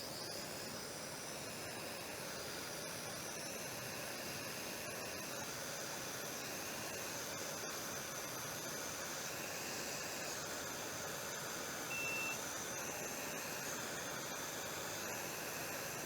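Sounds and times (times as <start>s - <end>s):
short high electronic beep: 11.9s - 12.4s.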